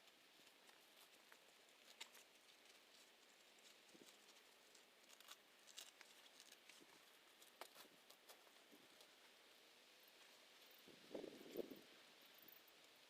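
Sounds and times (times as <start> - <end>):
faint small clicks: 0.0 - 8.4.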